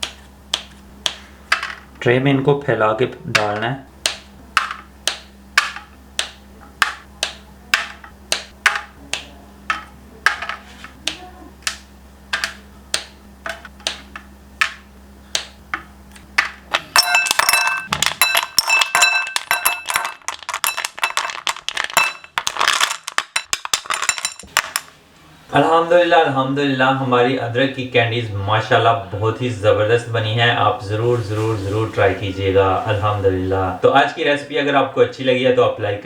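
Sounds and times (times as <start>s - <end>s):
hard candy pieces clicking: 3.4s - 24.9s
candy pieces clinking clatter: 17.0s - 24.9s.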